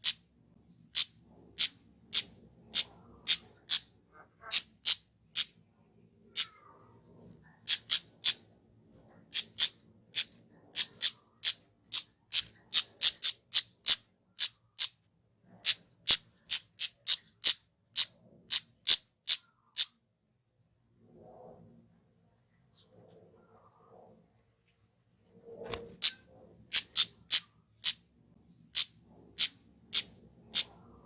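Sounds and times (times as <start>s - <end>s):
bird high-pitched call notes: 7.7s - 8.4s, 26.0s - 28.0s, 28.8s - 30.8s.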